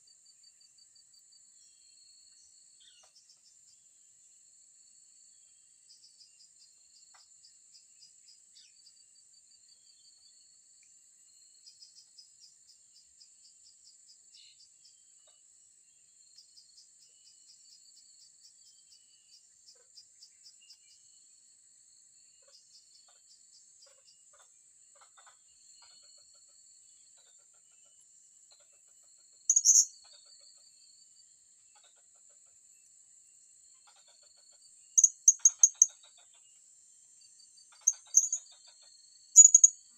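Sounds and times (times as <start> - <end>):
crickets chirping: 29.3 - 39.9.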